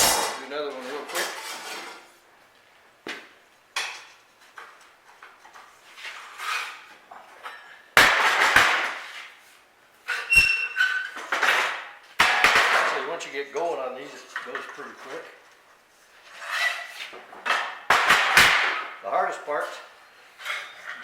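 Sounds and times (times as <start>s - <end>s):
metal parts clanking: 0.0s - 0.5s.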